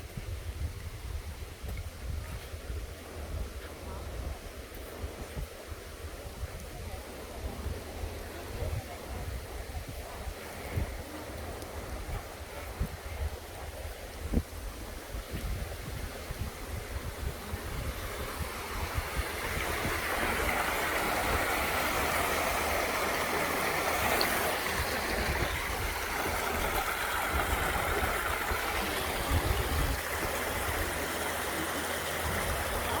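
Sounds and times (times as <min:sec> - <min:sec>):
wind rumble on microphone: 0:00.0 - 0:33.0
water mill splashing water: 0:10.2 - 0:33.0.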